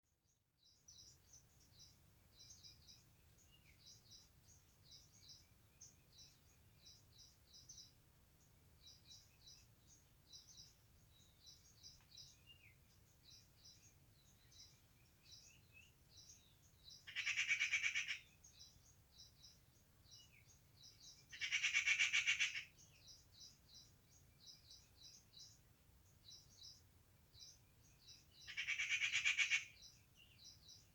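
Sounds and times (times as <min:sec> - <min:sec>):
rapid bird trills: 0:17.0 - 0:18.3, 0:21.3 - 0:22.8, 0:28.4 - 0:30.0.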